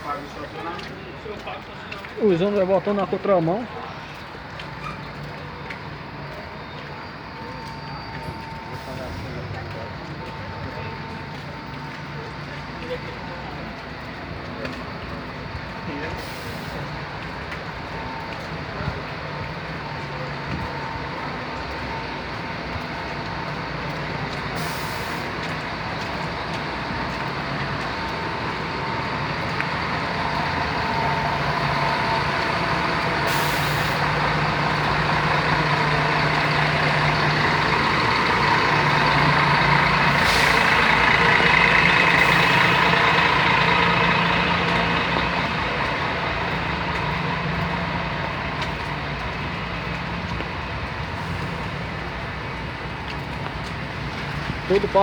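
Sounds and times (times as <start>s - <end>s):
diesel engines idling in traffic: 0.0s - 55.0s
air brake hisses: 24.6s - 25.3s, 33.3s - 34.0s.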